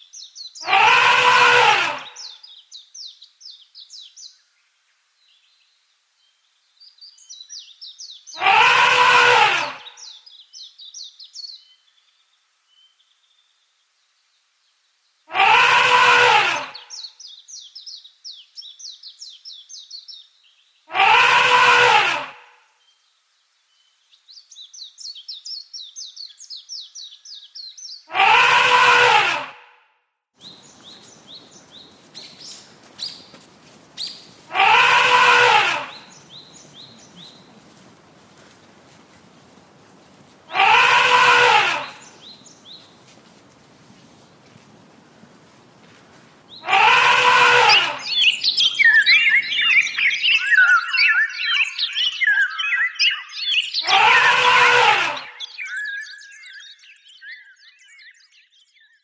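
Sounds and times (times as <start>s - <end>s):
elephant trumpeting: 0.6s - 2.2s, 8.4s - 9.9s, 15.3s - 16.8s, 20.9s - 22.5s, 28.1s - 29.7s, 34.5s - 36.2s, 40.5s - 42.3s, 46.6s - 48.3s, 53.8s - 55.3s
bird chirping: 30.4s - 39.6s, 40.5s - 43.4s, 46.0s - 59.0s.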